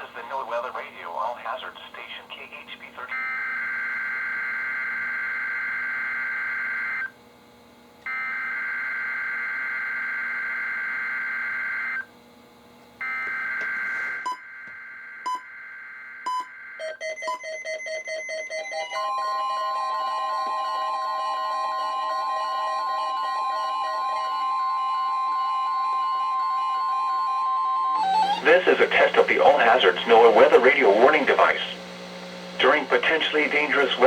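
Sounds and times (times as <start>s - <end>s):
steady long warning alarm tone: 3.1s - 12.4s, 13.0s - 34.0s
overlapping alarm beeping: 13.0s - 24.5s, 28.0s - 34.0s.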